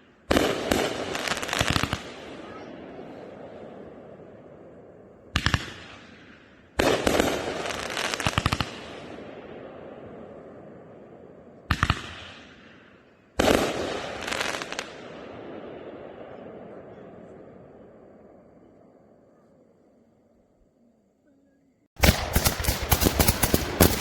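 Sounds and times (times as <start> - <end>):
fireworks crackling: 0.0 - 3.6, 5.3 - 9.3, 11.7 - 15.2, 22.0 - 24.0
fireworks bangs: 0.0 - 10.4, 11.6 - 17.5, 22.0 - 24.0.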